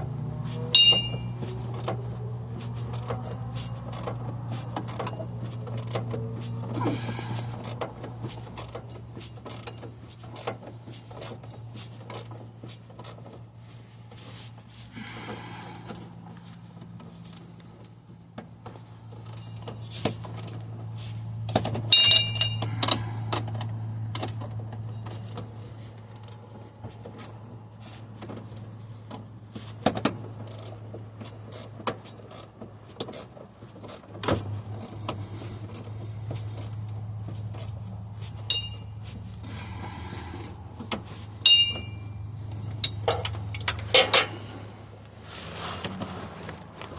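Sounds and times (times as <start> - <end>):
hand tools and metal parts clinking: 0.4 - 46.9
bright metallic jingle: 0.8 - 1.3.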